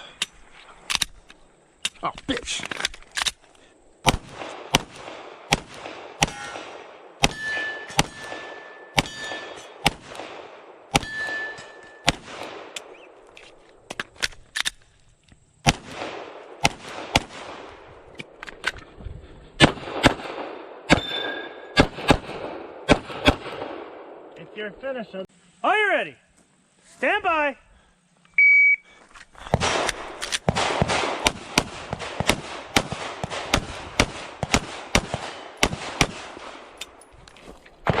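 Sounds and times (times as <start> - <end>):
rapid pistol fire: 4.0 - 9.2, 9.8 - 11.3, 12.1 - 12.8, 19.6 - 21.0, 21.8 - 24.0, 29.6 - 36.8
steel targets ringing: 7.2 - 9.8, 11.0 - 12.1, 20.9 - 21.8.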